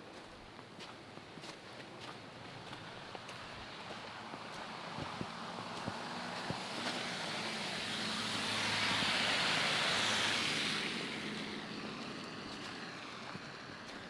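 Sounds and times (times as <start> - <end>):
car tyre hiss on snow: 4.0 - 14.0.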